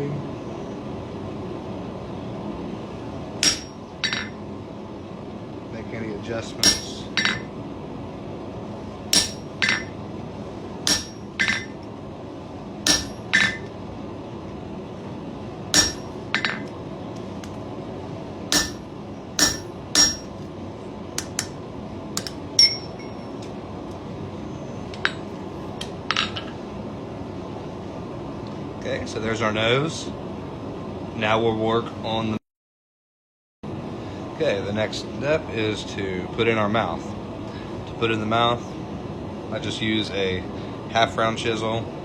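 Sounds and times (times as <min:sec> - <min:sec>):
hammer striking metal punch: 0:03.4 - 0:04.3, 0:06.6 - 0:07.5, 0:09.1 - 0:10.0, 0:10.9 - 0:11.8, 0:12.9 - 0:13.7, 0:15.8 - 0:16.7, 0:18.5 - 0:20.4, 0:22.2 - 0:23.2.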